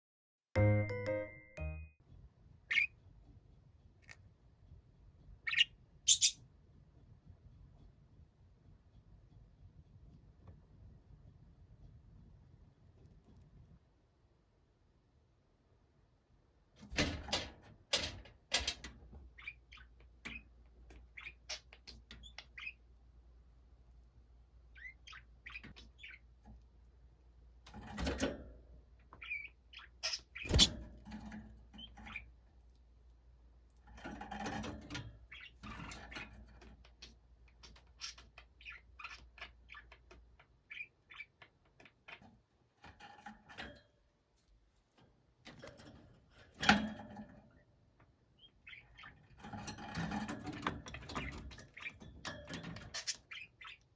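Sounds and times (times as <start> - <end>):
budgerigars chirping and chattering: 2.7 - 2.9, 5.4 - 6.4, 19.3 - 22.9, 24.7 - 26.3, 29.2 - 30.8, 35.2 - 42.2, 48.4 - 52.1, 52.7 - 53.9.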